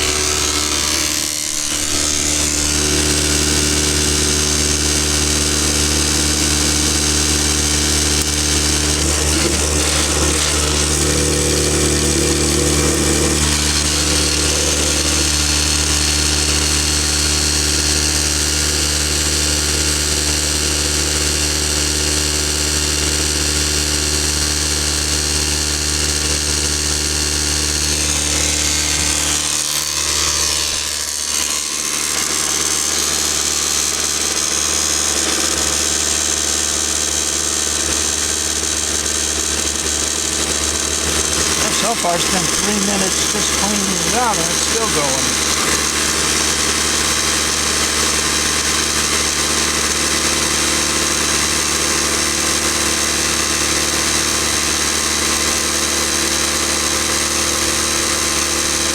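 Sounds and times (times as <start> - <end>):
motor humming: 0.0 - 18.7, 25.9 - 53.9.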